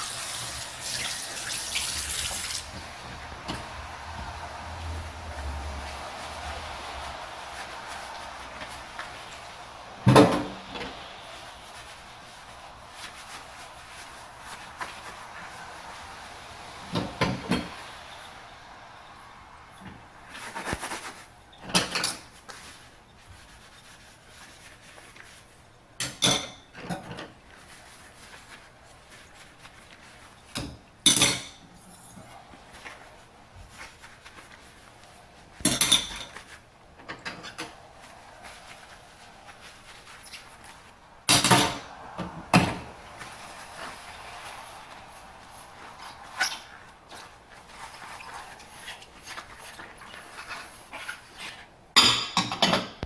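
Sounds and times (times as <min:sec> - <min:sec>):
dishes and cutlery clattering: 0:52.0 - 0:53.0.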